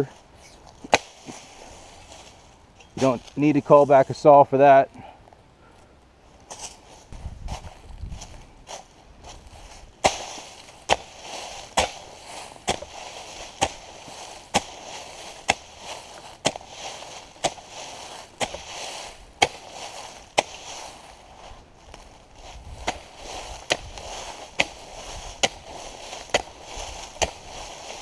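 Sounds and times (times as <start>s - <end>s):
rough scraping: 0.0s - 4.8s, 6.4s - 28.0s
hoe chopping: 0.8s - 1.7s, 10.0s - 21.2s, 21.9s - 28.0s.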